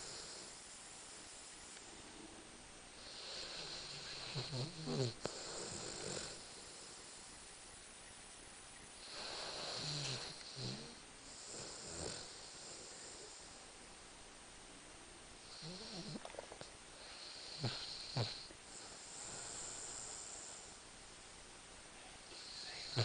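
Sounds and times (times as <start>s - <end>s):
dog snoring: 0.0s - 0.6s, 3.0s - 7.2s, 9.0s - 13.6s, 15.4s - 20.8s, 22.3s - 23.0s.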